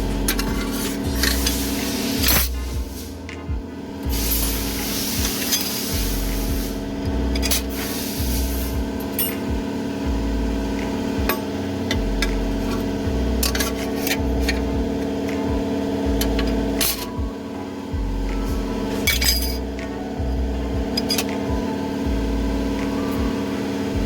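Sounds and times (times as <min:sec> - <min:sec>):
metal clutch plates clinking: 0:00.0 - 0:24.0
steady droning hum: 0:00.0 - 0:24.0
hiss: 0:01.4 - 0:03.2, 0:04.1 - 0:06.8, 0:07.7 - 0:08.8.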